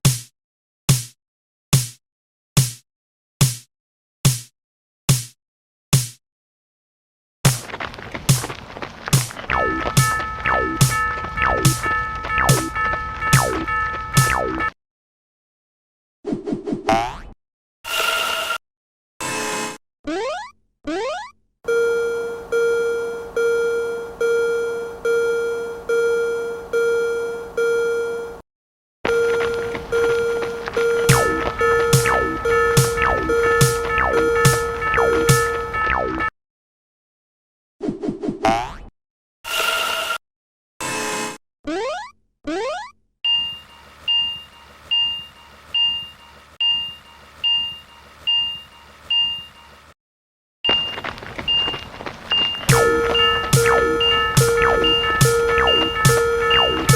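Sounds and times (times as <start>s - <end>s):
railroad crossing bell dinging: 9.6s - 14.3s, 29.1s - 35.8s, 43.3s - 49.8s, 50.7s - 56.9s.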